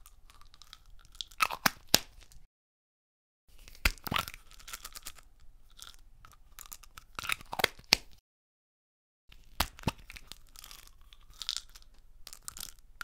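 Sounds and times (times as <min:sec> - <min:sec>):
pills rattling in bottle: 0:04.2 - 0:07.5, 0:10.0 - 0:12.9.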